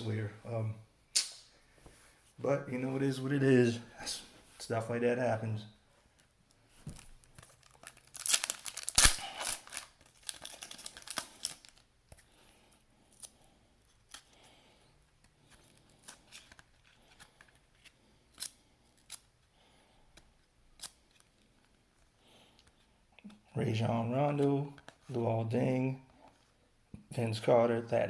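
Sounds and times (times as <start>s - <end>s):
cards clicking and flicking: 1.2s - 1.5s
wrapper tearing and crinkling: 6.9s - 11.9s.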